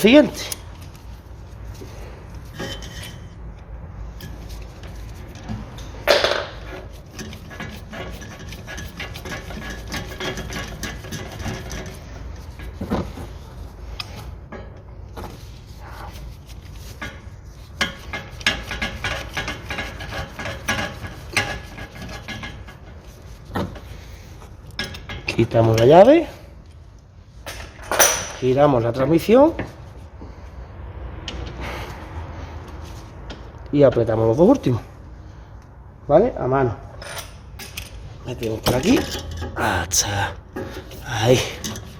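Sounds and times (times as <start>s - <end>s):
metallic clinks and knocks: 27.5s - 28.4s.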